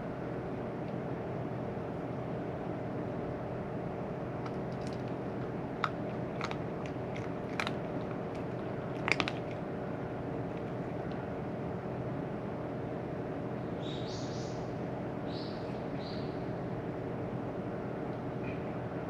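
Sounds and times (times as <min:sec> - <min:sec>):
steady low hum: 0:00.0 - 0:19.0
cat crunching dry food: 0:04.4 - 0:11.2.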